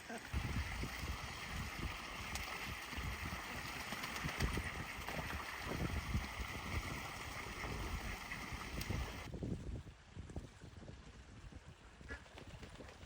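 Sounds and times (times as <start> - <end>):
ducks splashing: 0.0 - 9.3
watery hiss: 0.3 - 9.3
wind buffeting microphone: 0.3 - 13.0.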